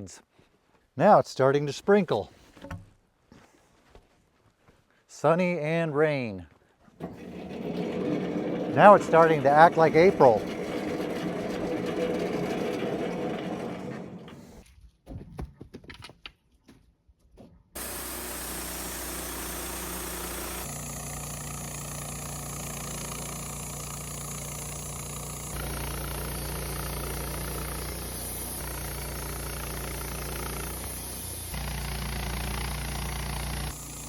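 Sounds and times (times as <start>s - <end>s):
sawmill engine running: 7.0s - 14.6s, 17.8s - 34.0s.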